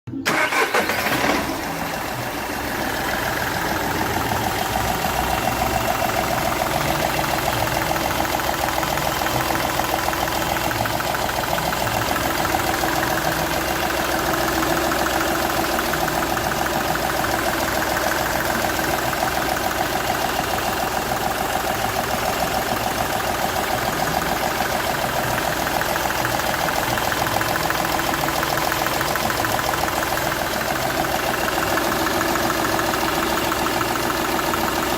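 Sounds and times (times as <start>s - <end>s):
diesel engine idling: 0.2s - 34.9s.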